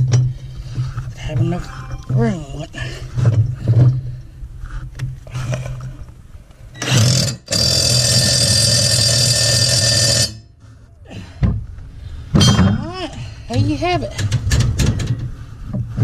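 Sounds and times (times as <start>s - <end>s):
impact wrench buzzing: 6.8s - 10.4s.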